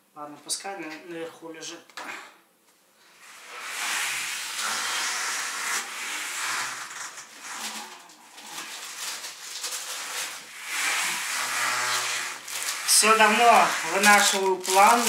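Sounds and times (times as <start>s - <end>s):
plastic bag rustling: 5.5s - 15.0s.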